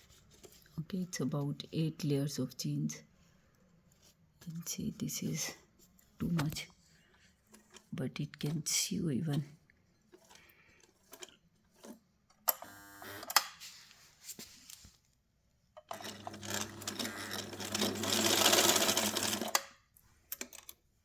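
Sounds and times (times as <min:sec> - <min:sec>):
sewing machine stitching: 0:15.9 - 0:19.8.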